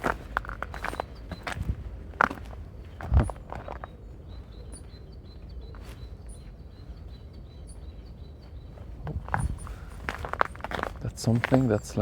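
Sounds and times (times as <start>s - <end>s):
songbirds calling: 0.0s - 12.0s
higher bird chirps: 3.1s - 10.2s.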